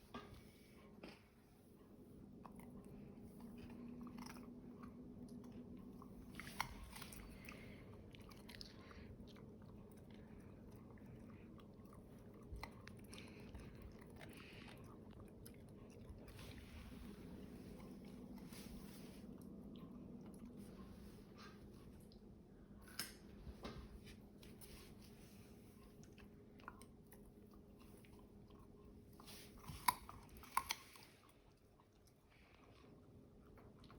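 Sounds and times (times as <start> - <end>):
dog chewing carrot: 2.4 - 20.9, 25.6 - 33.9.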